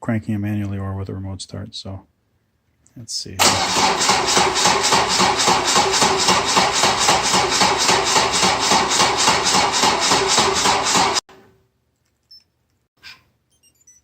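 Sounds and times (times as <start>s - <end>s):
starter motor cranking: 3.4s - 11.2s.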